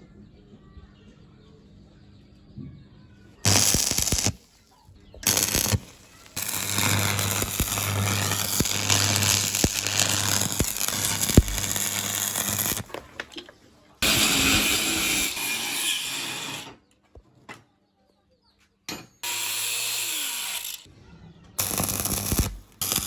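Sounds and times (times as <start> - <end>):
welding arc crackling: 3.4 - 4.6, 5.2 - 13.0, 14.0 - 15.4, 21.6 - 23.0
low buzz: 3.5 - 4.4, 5.2 - 12.9.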